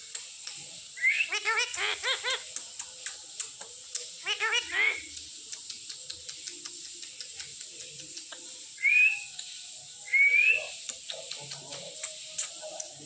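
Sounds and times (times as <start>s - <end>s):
faint ticks: 0.1s - 0.7s, 2.5s - 4.2s, 5.0s - 8.5s, 9.4s - 9.6s, 10.8s - 13.0s
parrot whistling: 1.0s - 2.4s, 8.8s - 9.3s, 10.1s - 10.7s.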